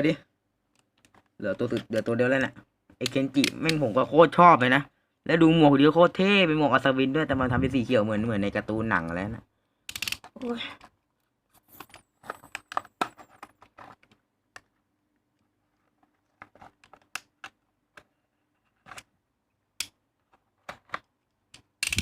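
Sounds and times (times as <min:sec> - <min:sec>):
lego pieces clicking: 0:09.9 - 0:10.9, 0:20.9 - 0:22.0.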